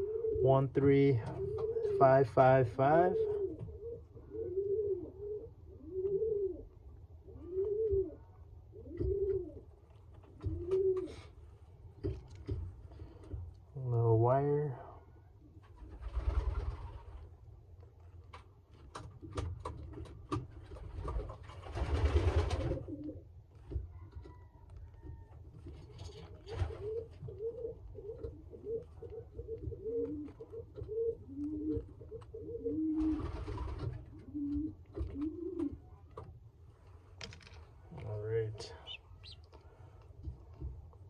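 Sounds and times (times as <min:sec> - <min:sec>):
pigeons cooing: 0:00.0 - 0:02.2, 0:02.8 - 0:11.4, 0:21.0 - 0:36.2, 0:38.4 - 0:39.7.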